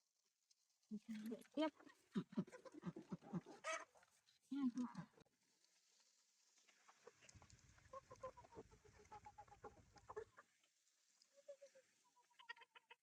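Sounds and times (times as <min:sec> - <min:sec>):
hens clucking: 0:01.1 - 0:04.0, 0:06.9 - 0:10.6, 0:11.4 - 0:13.0.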